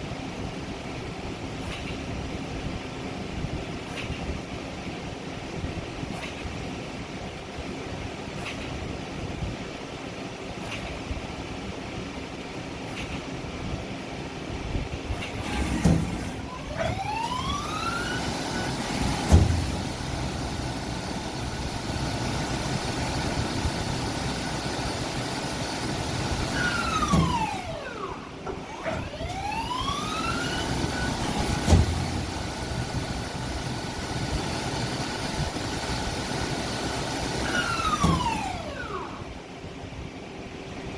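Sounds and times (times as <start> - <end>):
lathe spindle whine: 15.4 - 39.2
sharp clunks: 19.0 - 19.8.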